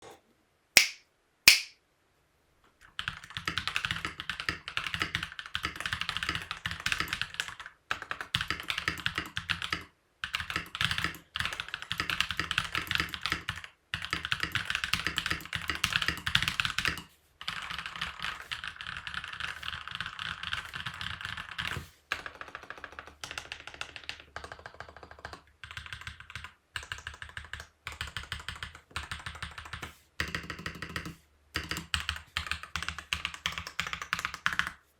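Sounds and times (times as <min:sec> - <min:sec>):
sharp clicks: 0:00.8 - 0:01.8
mechanical keyboard typing: 0:02.8 - 0:34.8.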